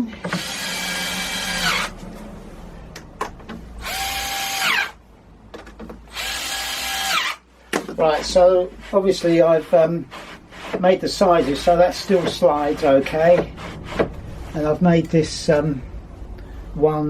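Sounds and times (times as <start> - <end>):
power drill driving screws: 0.2 - 1.9, 3.8 - 5.0, 6.1 - 7.4.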